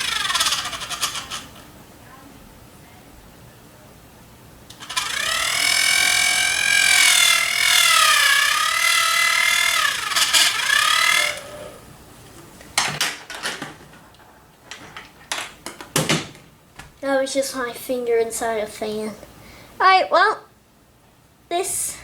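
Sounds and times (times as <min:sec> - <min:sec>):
fan blades buzzing against finger: 0:00.0 - 0:01.8, 0:04.7 - 0:12.1.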